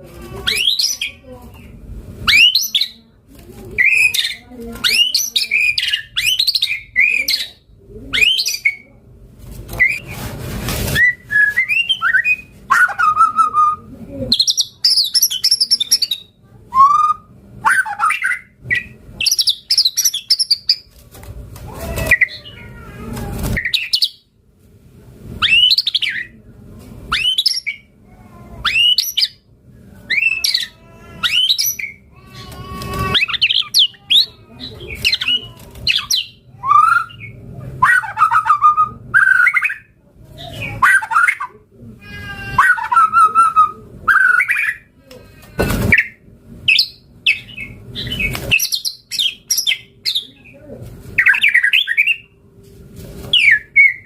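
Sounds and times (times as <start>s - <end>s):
bird singing varied song: 3.8s - 7.6s, 11.1s - 20.9s, 27.1s - 27.9s, 30.1s - 32.5s, 33.1s - 41.5s, 46.0s - 50.5s, 51.2s - 52.4s.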